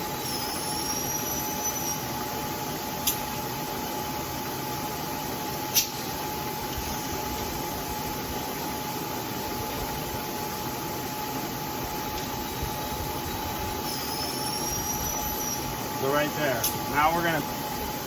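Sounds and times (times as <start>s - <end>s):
milling machine whirring: 0.0s - 3.2s, 10.8s - 18.0s
sharp click: 3.0s - 3.2s, 5.7s - 6.0s, 16.6s - 16.8s.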